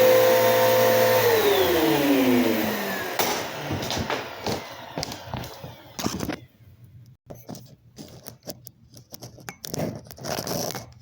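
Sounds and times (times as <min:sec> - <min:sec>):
upright vacuum cleaner running: 0:00.0 - 0:06.3.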